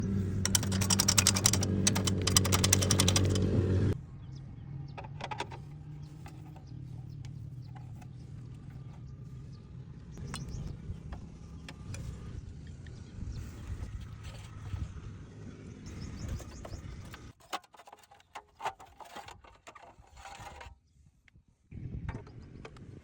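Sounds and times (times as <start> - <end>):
steady low hum: 0.0 - 17.4
motorcycle chain rattling: 0.3 - 3.5.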